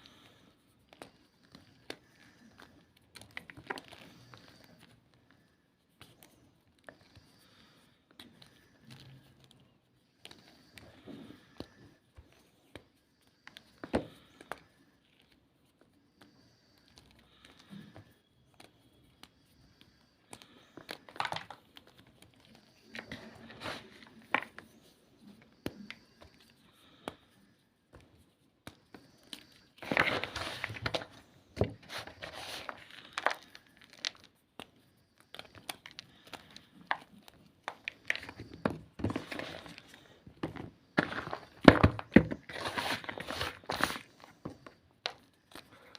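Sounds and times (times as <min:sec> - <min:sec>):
chalk being crushed: 0:28.8 - 0:45.9.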